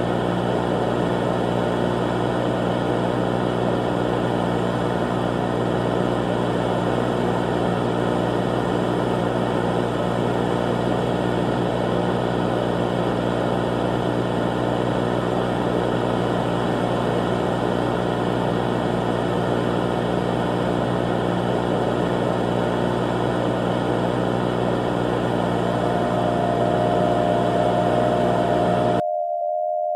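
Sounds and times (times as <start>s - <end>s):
low dense hum: 24.6s - 29.8s
grainy noise layer: 25.4s - 29.0s.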